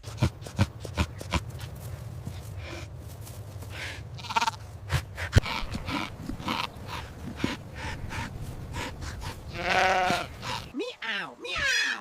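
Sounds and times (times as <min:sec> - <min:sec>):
animal short repeated breaths: 0:04.8 - 0:10.7.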